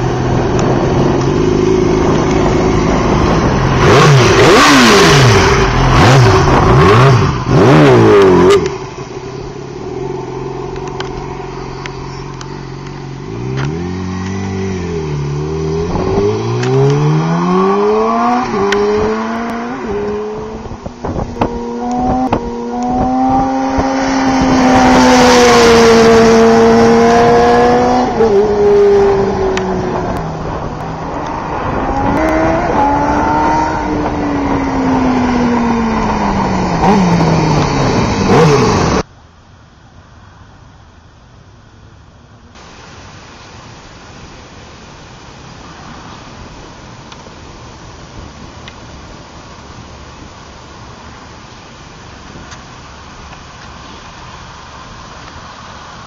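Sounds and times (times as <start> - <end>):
motorcycle engine revving: 0.0 - 39.1.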